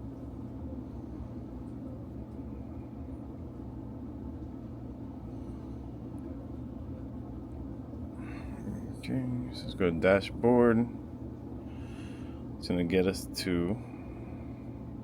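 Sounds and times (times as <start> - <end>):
constant hum: 0.0 - 15.0
low mechanical rumble: 0.0 - 15.0.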